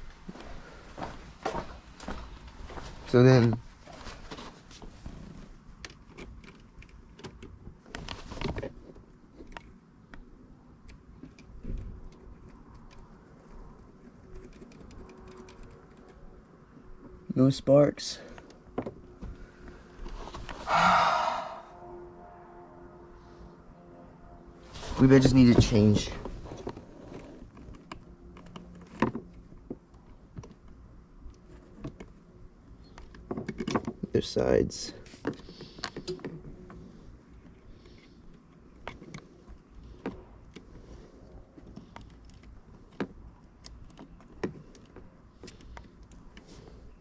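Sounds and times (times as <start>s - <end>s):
small parts clicking: 14.3s - 16.2s.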